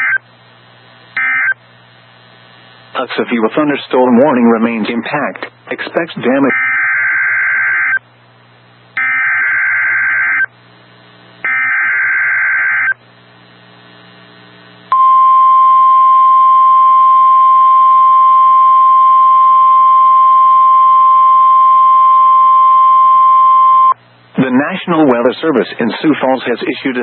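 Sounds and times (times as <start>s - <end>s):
steady warning alarm tone: 1.2s - 1.6s, 6.4s - 8.0s, 9.0s - 10.5s, 11.4s - 13.0s, 14.9s - 24.0s.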